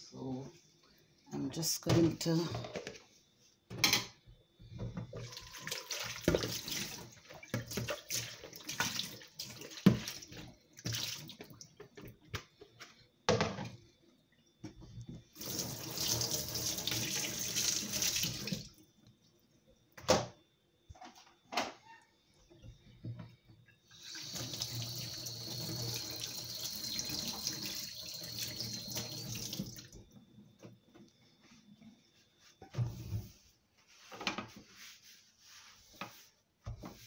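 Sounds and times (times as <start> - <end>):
water splashing in a kitchen sink: 5.0 - 12.7, 15.1 - 19.4, 23.7 - 30.2.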